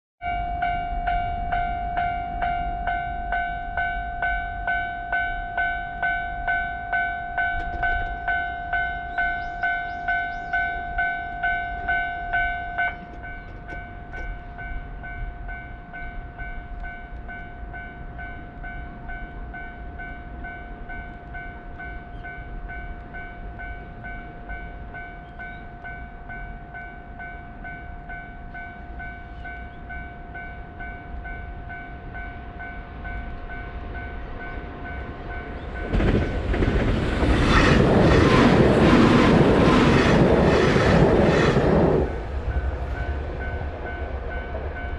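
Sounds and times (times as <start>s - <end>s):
level crossing warning bell: 0.2s - 36.2s.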